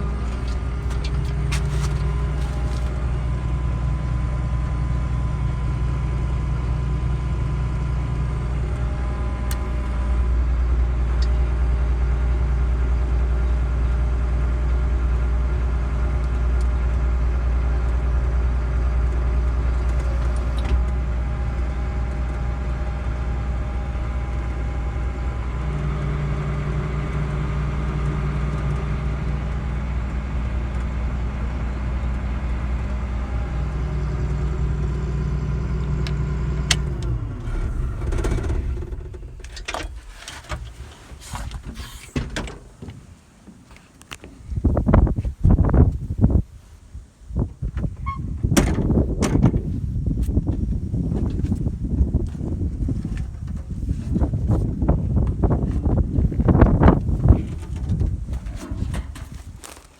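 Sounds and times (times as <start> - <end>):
combine harvester engine running: 0.0 - 46.4, 47.2 - 59.9.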